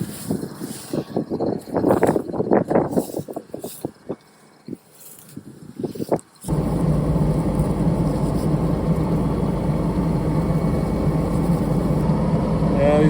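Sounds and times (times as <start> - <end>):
sprayer engine idling: 6.5 - 13.0.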